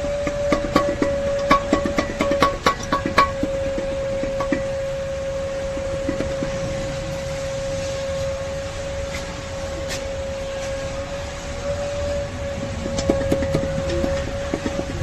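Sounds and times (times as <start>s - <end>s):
background rumble: 0.0s - 10.4s
brake squealing: 0.0s - 15.0s.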